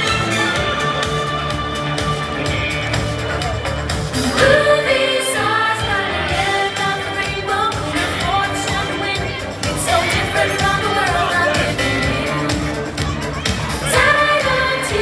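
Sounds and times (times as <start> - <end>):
pop song: 0.0 - 15.0
person singing: 4.2 - 15.0.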